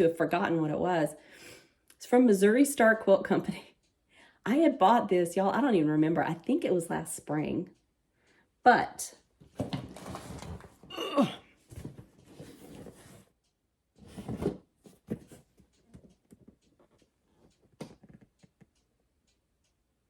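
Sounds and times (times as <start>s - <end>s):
woman coughing: 10.9s - 11.5s.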